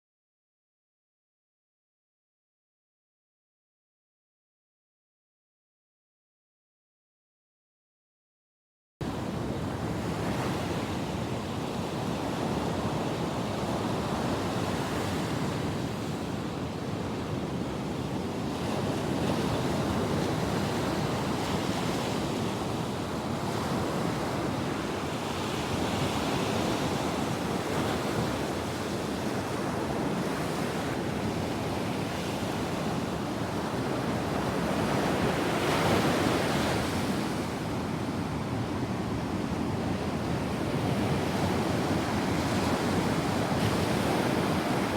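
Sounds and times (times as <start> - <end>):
ocean waves breaking on beach: 9.0 - 44.9.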